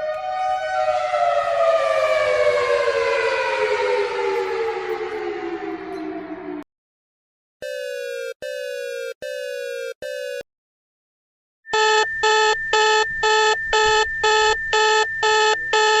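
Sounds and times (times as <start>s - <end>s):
alarm beeping: 7.6s - 10.4s, 11.7s - 16.0s
short falling electronic tones: 11.7s - 16.0s.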